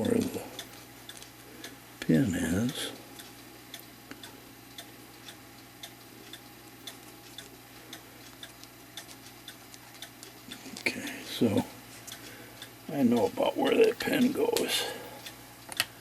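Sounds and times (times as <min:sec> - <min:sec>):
mechanical clock ticking: 0:00.0 - 0:16.0.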